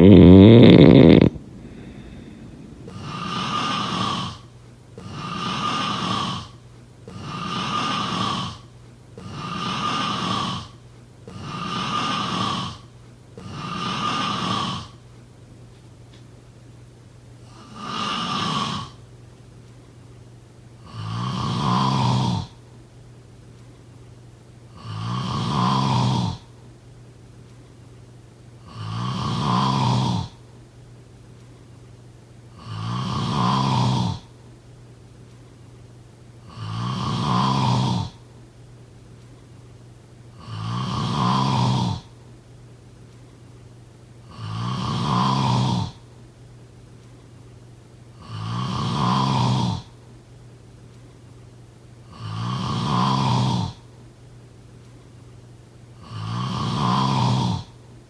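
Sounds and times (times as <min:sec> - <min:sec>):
person snoring: 0:00.0 - 0:06.5, 0:24.8 - 0:26.4, 0:32.6 - 0:34.2, 0:36.5 - 0:38.2, 0:40.4 - 0:42.1, 0:44.3 - 0:46.0, 0:48.2 - 0:49.9, 0:52.1 - 0:53.8, 0:56.0 - 0:57.7
faint low hum: 0:00.0 - 0:07.4.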